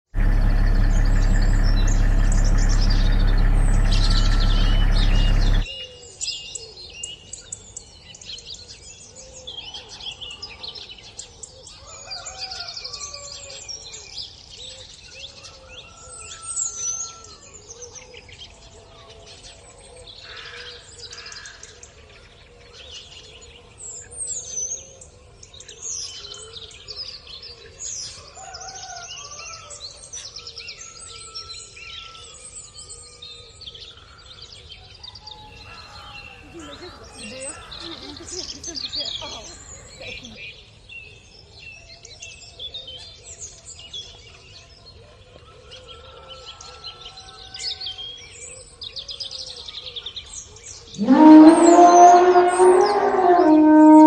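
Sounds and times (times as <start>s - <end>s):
loud dense low rumble: 0.1s - 5.7s, 35.4s - 40.4s
birds chirping and calling: 35.4s - 40.4s.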